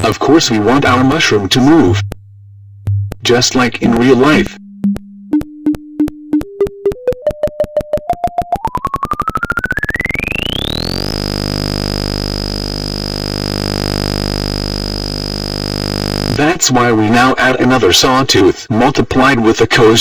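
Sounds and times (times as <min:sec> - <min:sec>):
synthesized clicks rising into buzz: 0:04.8 - 0:16.4
high whine: 0:08.2 - 0:16.4.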